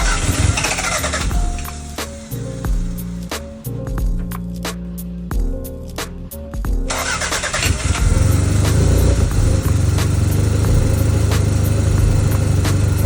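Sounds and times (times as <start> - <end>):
car engine starting and running: 0.0 - 3.3, 6.9 - 13.0
background music: 0.0 - 13.0.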